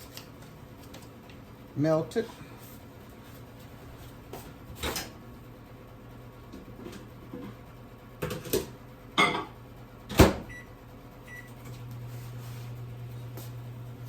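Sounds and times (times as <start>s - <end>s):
microwave oven humming: 0.0s - 14.0s
keypad beeps: 11.3s - 11.6s.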